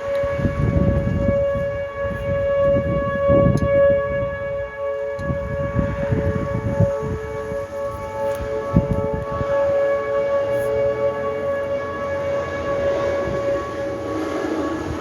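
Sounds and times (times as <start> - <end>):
warning siren steady tone: 0.0 - 15.0
wind buffeting microphone: 0.0 - 15.0.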